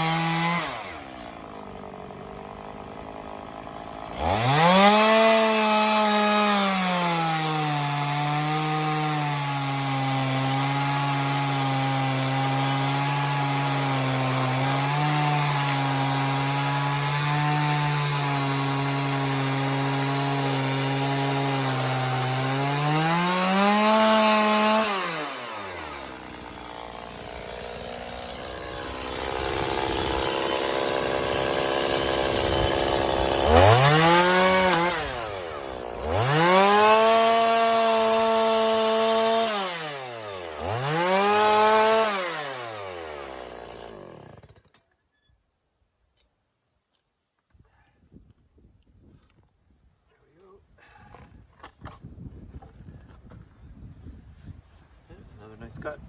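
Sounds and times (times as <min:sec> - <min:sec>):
chainsaw cutting through log: 0:00.0 - 0:44.8.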